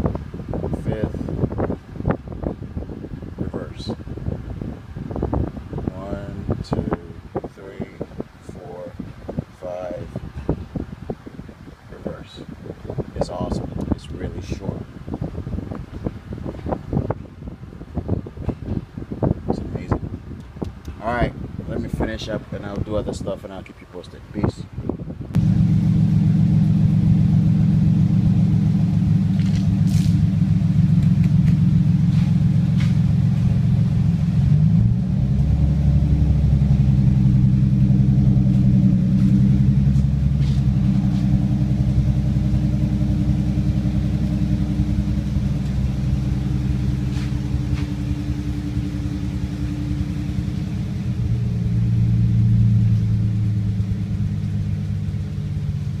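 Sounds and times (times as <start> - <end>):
car engine droning: 25.2 - 56.0.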